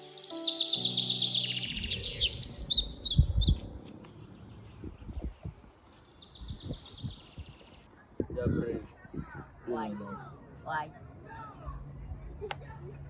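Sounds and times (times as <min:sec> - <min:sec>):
background music: 0:00.0 - 0:02.8
small birds chirping and trilling: 0:00.0 - 0:10.7.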